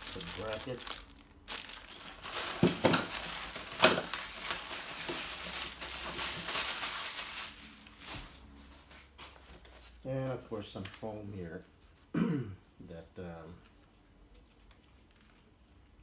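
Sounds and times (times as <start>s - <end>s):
plastic packaging crinkling: 0.0s - 8.6s.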